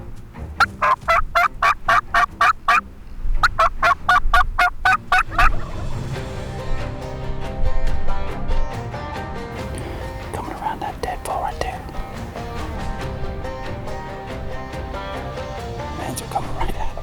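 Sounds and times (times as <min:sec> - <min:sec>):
background music: 0:00.0 - 0:17.0
wild turkey calling: 0:00.5 - 0:06.1, 0:13.4 - 0:17.0.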